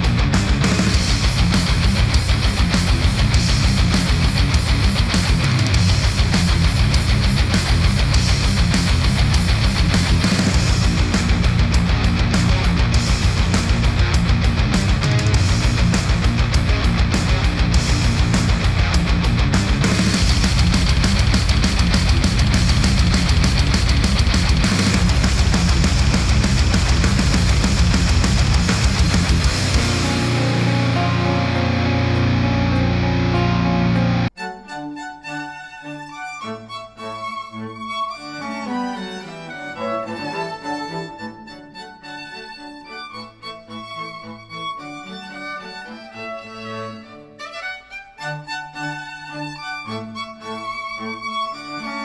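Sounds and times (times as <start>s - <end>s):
heavy rock music: 0.0s - 34.4s.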